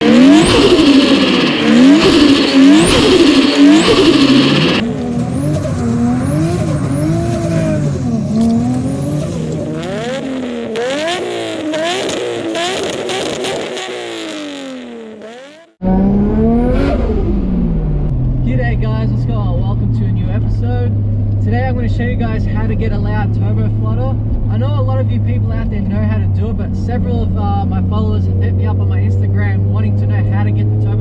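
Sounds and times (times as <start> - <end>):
car engine revving hard: 0.0 - 20.7.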